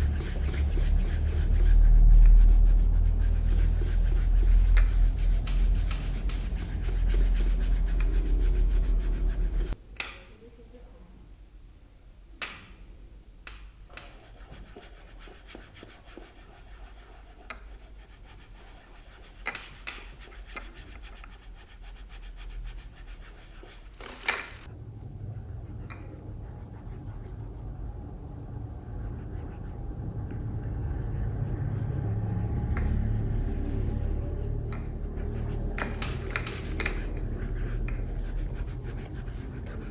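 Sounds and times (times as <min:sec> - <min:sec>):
shoe polishing rubbing strokes: 0:00.0 - 0:09.8, 0:14.0 - 0:24.7, 0:37.1 - 0:39.9
low steady hum: 0:24.6 - 0:39.9.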